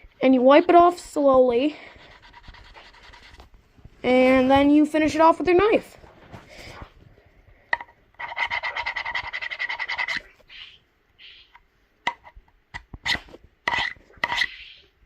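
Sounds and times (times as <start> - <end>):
knife blade scraping: 8.2 - 10.8, 13.0 - 14.8.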